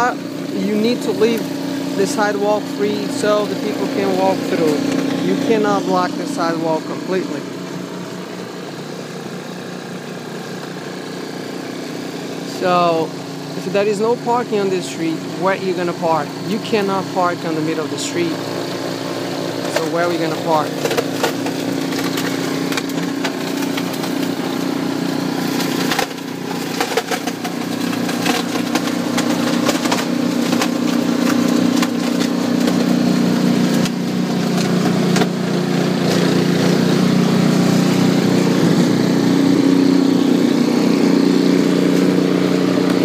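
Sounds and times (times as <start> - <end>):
snowblower engine running: 0.0 - 43.0.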